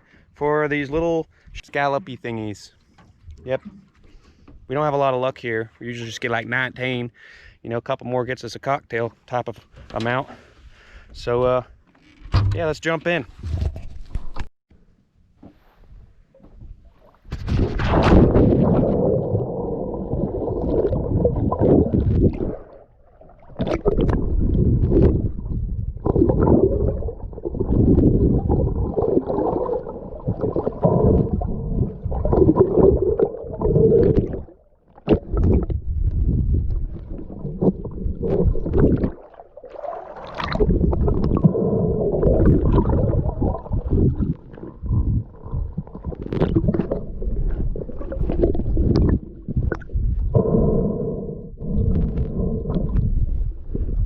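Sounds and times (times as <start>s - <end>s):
muffled water sloshing and gurgling: 15.4s - 54.0s.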